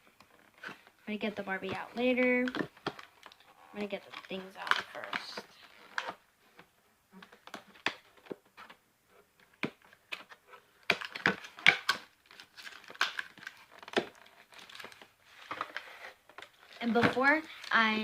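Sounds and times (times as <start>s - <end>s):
packaging crinkling and rustling: 9.5s - 18.0s.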